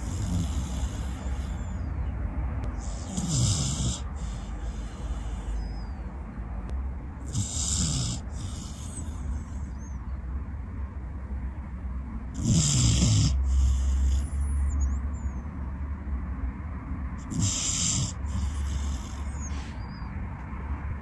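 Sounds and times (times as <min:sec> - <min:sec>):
dog snoring: 0:00.0 - 0:01.9, 0:02.6 - 0:06.2, 0:07.2 - 0:10.0, 0:12.3 - 0:15.4, 0:17.2 - 0:20.1
steady low hum: 0:00.0 - 0:21.0.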